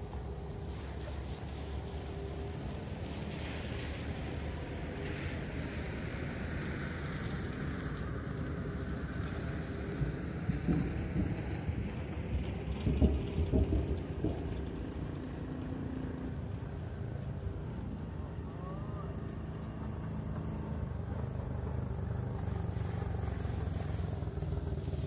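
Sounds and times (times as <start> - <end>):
engine running steadily: 0.0 - 25.0.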